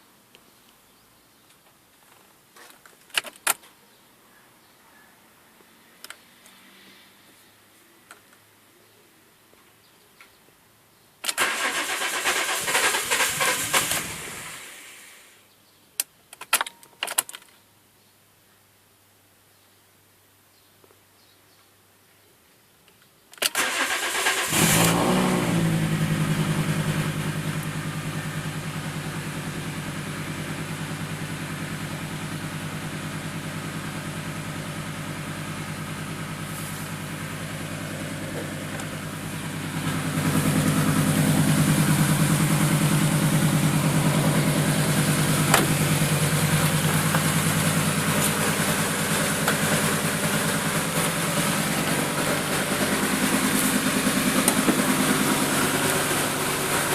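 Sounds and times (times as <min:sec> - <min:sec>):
car engine starting and idling: 0:11.3 - 0:15.4, 0:23.4 - 0:56.9.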